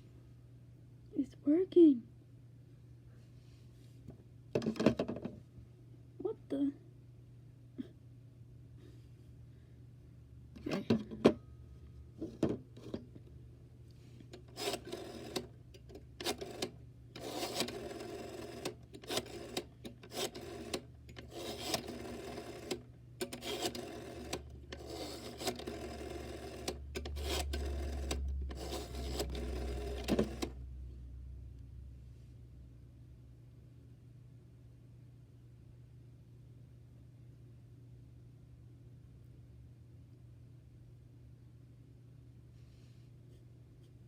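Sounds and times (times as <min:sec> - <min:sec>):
rotary telephone dial whirring: 0:14.4 - 0:30.6
low hum: 0:26.9 - 0:34.7.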